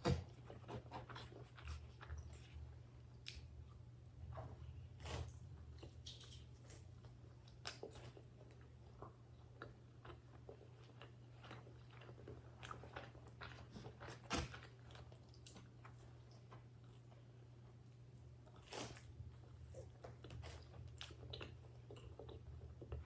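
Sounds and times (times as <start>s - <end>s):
chewing crunches and mouth clicks: 0.3s - 3.9s, 4.5s - 23.0s.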